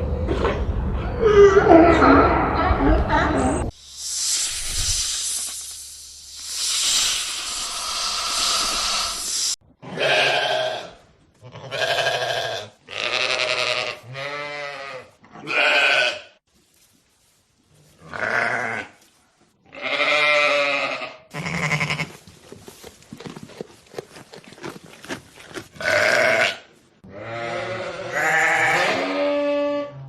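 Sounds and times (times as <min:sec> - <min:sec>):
steady hiss: 0:03.7 - 0:09.6
goats bleating: 0:09.8 - 0:16.3, 0:19.8 - 0:22.2, 0:25.8 - 0:29.2.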